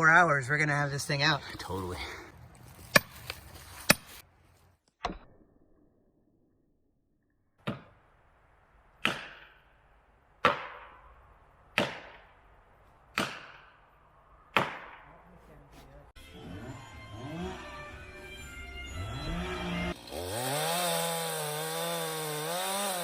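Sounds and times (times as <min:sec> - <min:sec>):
hammer striking wedges: 0:02.9 - 0:04.2, 0:09.0 - 0:09.6, 0:10.4 - 0:11.0, 0:11.7 - 0:12.3, 0:13.1 - 0:13.8.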